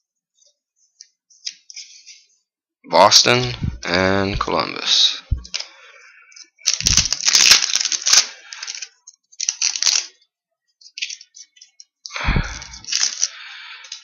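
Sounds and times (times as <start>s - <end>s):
wrapper crinkling: 6.4s - 10.2s, 10.8s - 11.8s, 12.4s - 14.0s
foil pack tearing: 6.7s - 10.1s, 12.5s - 13.4s.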